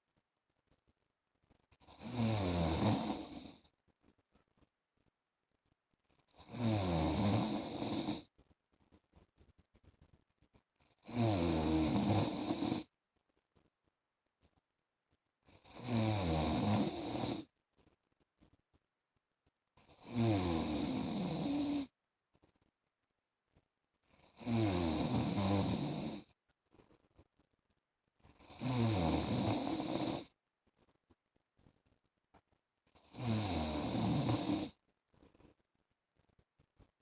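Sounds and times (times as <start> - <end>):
man snoring: 1.9 - 3.6, 6.4 - 8.2, 11.0 - 12.9, 15.6 - 17.4, 20.0 - 21.9, 24.4 - 26.2, 28.5 - 30.3, 33.0 - 34.7.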